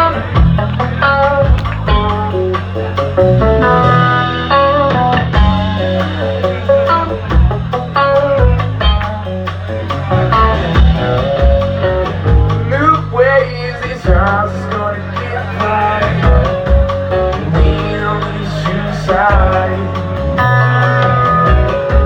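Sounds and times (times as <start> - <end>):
bass: 0.0 - 22.0
drum beat: 0.0 - 22.0
guitar: 0.0 - 22.0
person singing: 12.5 - 22.0.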